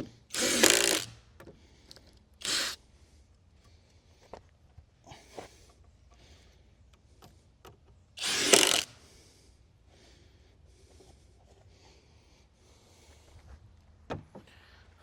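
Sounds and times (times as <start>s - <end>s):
power tool burst: 0.3s - 1.2s, 2.4s - 2.8s, 8.2s - 8.9s.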